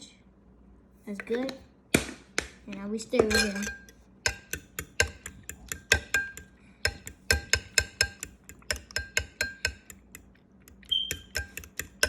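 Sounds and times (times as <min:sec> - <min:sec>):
fork beating eggs in bowl: 0:02.7 - 0:12.0.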